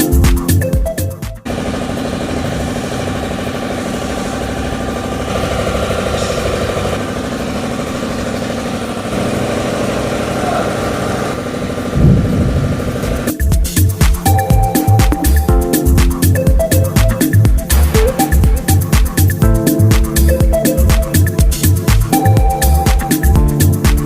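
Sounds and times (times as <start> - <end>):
music: 0.0 - 1.5, 12.0 - 24.0
car engine idling: 1.5 - 13.6.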